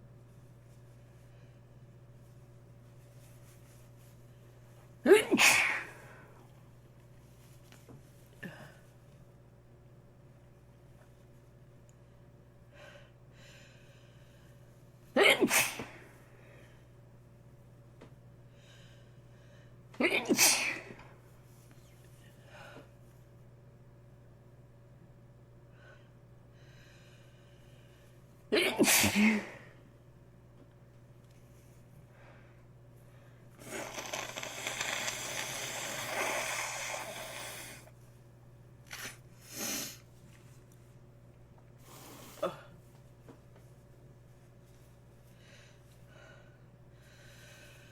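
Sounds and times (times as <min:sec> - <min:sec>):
person sneezing: 0:05.0 - 0:06.2, 0:15.2 - 0:16.1, 0:20.0 - 0:21.0, 0:28.5 - 0:29.7, 0:42.1 - 0:42.8
person breathing through congested nose: 0:33.6 - 0:37.9.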